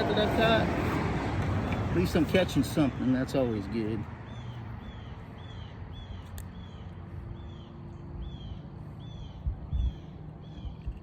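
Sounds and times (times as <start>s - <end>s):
bird chirping: 4.2s - 11.0s
steady low rumble: 9.1s - 11.0s.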